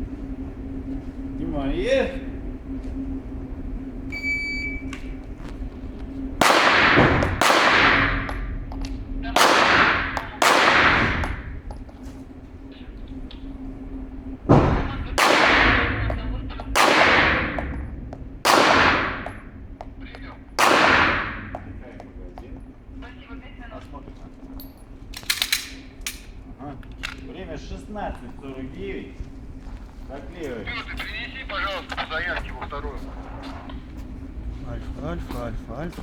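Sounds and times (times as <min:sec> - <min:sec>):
electronic beep: 0:04.1 - 0:05.1
pistol shots echoing: 0:06.4 - 0:08.6, 0:09.4 - 0:11.6, 0:14.5 - 0:19.6, 0:20.6 - 0:21.8.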